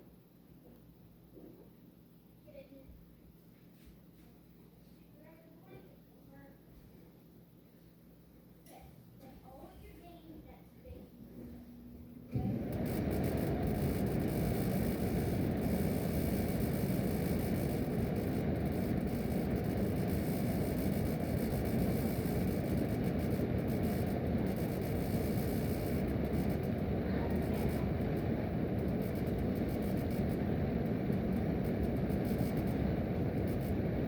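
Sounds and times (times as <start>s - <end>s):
furnace blower air rush: 10.8s - 34.0s.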